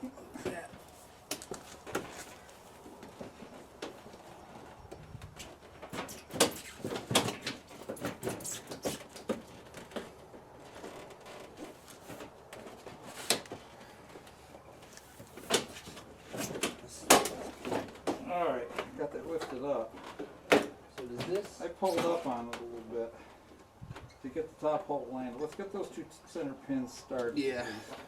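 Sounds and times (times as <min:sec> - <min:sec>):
plastic bumper knocking and scraping: 0:05.2 - 0:13.6.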